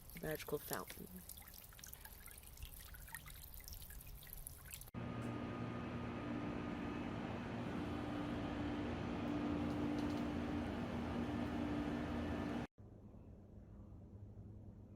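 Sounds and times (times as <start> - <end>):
fountain spray pattering into water: 0.0 - 4.9
steady hum with held tones: 5.0 - 12.7.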